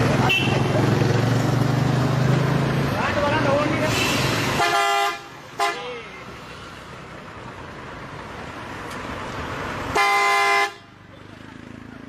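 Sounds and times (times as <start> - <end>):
bus horn: 0.2 - 0.7, 3.9 - 6.1, 9.9 - 10.9.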